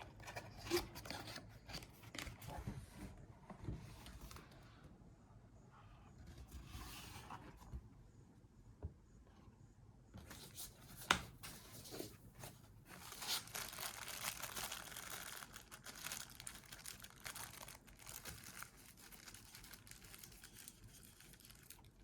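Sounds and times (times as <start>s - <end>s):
packaging crinkling and rustling: 10.4s - 22.0s.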